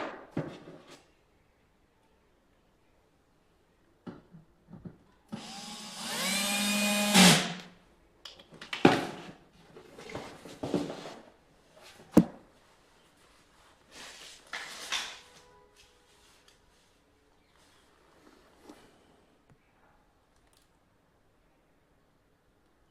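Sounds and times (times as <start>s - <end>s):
small electric motor whirring: 5.4s - 7.4s
rustling handling noises: 8.6s - 19.4s.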